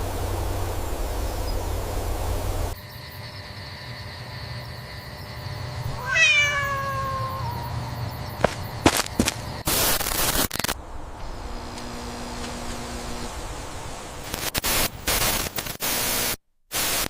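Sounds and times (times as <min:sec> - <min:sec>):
steady low hiss: 0:00.0 - 0:03.0, 0:07.4 - 0:17.0
bursts of static hiss: 0:08.8 - 0:17.0.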